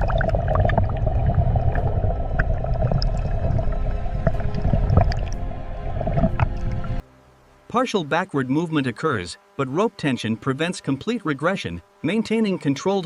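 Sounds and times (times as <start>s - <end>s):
churning gurgling water: 0.0s - 7.0s
deep continuous rumble: 0.0s - 7.0s
steady droning hum: 0.0s - 13.0s.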